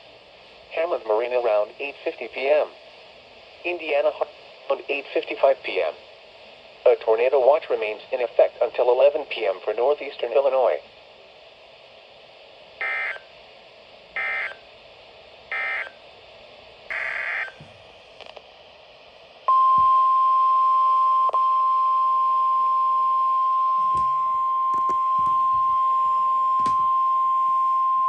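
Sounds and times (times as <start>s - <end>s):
steady warning alarm tone: 12.8s - 13.3s, 14.2s - 14.6s, 15.5s - 16.0s, 16.9s - 17.6s, 19.5s - 28.0s
warbling data tone bursts: 12.8s - 13.3s, 14.2s - 14.6s, 15.5s - 16.0s, 16.9s - 17.6s.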